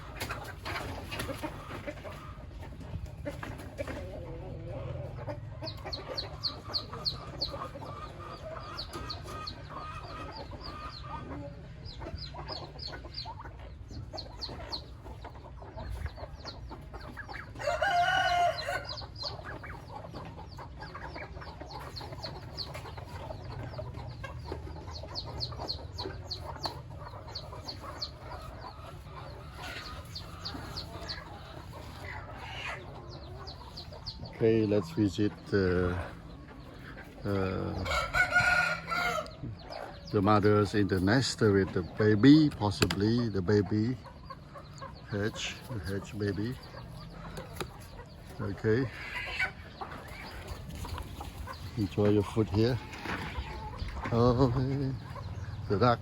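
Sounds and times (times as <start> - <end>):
chickens clucking: 0.0 - 56.0
rooster crowing: 17.6 - 19.0, 37.8 - 39.3.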